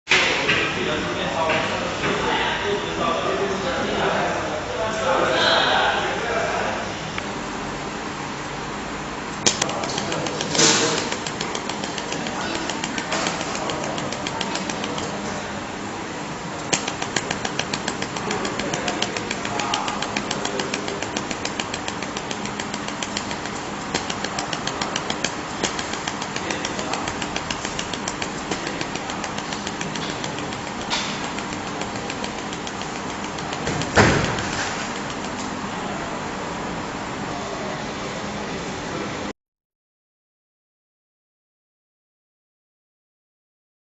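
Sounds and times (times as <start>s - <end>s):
steady machine hum: 7.0s - 39.3s
laser welder sharp ticks: 9.4s - 15.2s, 16.7s - 35.5s
loud knock: 16.7s - 35.4s.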